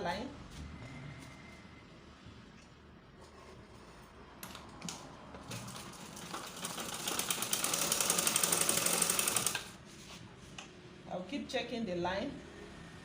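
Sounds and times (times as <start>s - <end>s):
sewing machine stitching: 5.4s - 9.8s.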